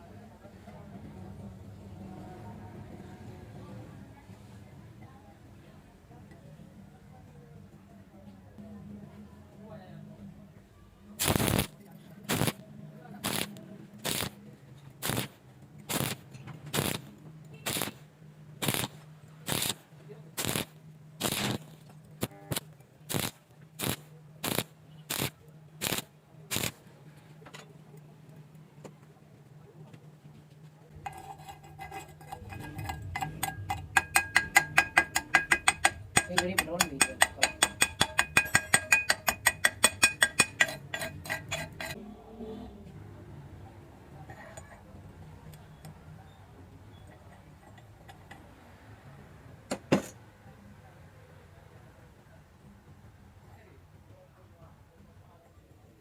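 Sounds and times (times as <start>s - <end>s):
rhythmic scraping strokes: 30.9s - 42.0s
ringing metal taps: 31.0s - 42.0s.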